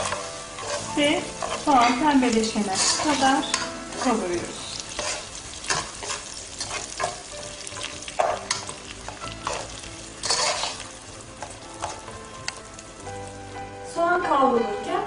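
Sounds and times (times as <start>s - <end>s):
spoon scraping pan: 0.0s - 12.6s
onion sizzling in hot oil: 0.0s - 15.0s.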